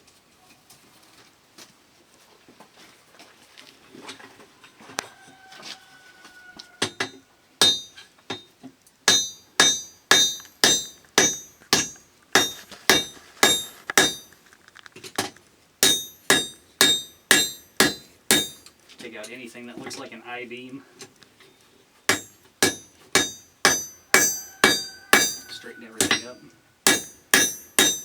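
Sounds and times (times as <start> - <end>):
hammer striking iron on anvil: 6.8 - 8.5, 9.1 - 14.3, 15.8 - 18.7, 22.1 - 28.0.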